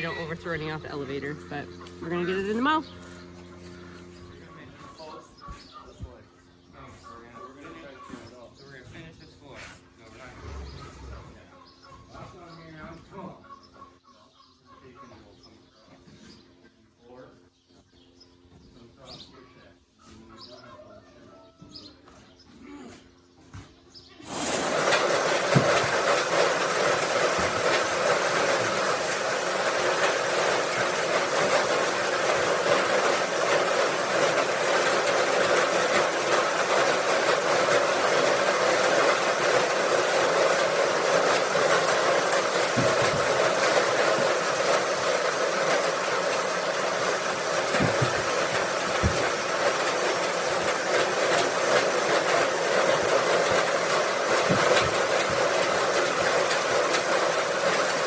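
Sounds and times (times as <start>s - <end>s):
bale elevator rattling: 24.2s - 58.0s.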